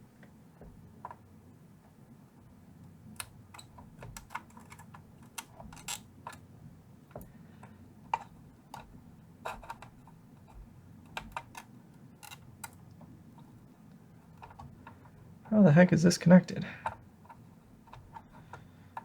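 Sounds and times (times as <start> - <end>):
hand tools clicking and tapping: 3.2 - 6.4, 9.5 - 13.0, 14.2 - 15.2, 16.8 - 19.0.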